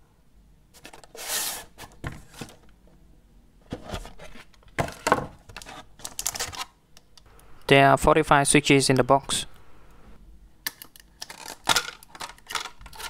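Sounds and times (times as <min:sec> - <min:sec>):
box sliding rub: 0:01.0 - 0:02.5.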